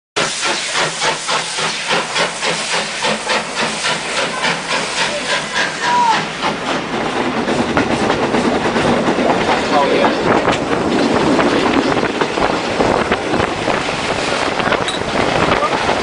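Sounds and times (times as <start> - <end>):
hiss of steam: 0.2 - 10.3, 11.0 - 16.0
steam locomotive chuffing: 0.2 - 16.0.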